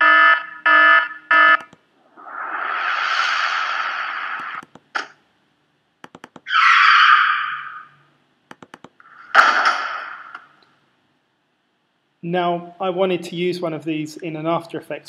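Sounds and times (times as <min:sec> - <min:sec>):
electronic alarm beeping: 0:00.0 - 0:01.7
sharp clicks: 0:01.6 - 0:01.8, 0:04.4 - 0:05.2, 0:06.0 - 0:06.5, 0:08.5 - 0:09.0
rushing noise burst: 0:02.0 - 0:04.6.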